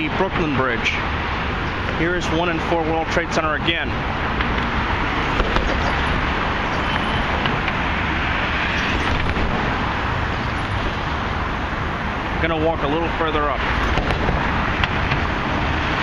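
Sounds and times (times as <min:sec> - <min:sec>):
road traffic hum: 0:00.0 - 0:16.0.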